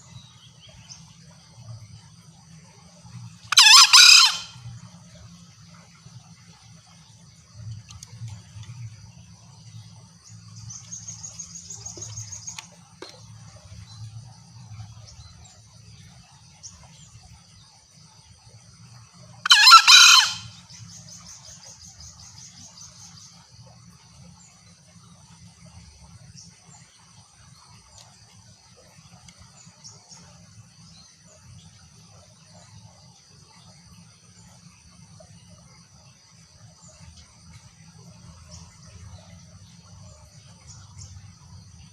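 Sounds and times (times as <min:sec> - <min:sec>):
junglefowl crowing: 0:03.5 - 0:04.6, 0:19.4 - 0:20.6.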